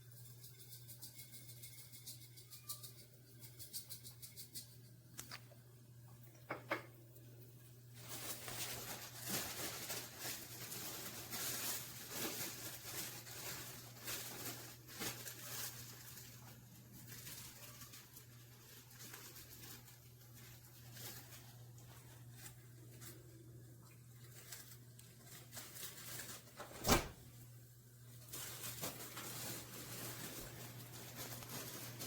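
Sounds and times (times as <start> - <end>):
faint rustling and handling: 7.2 - 32.0.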